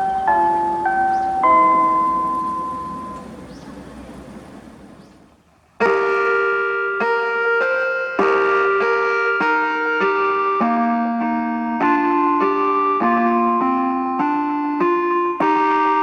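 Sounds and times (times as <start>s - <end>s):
chime melody: 0.0s - 3.4s
steady outdoor hiss: 0.0s - 10.4s.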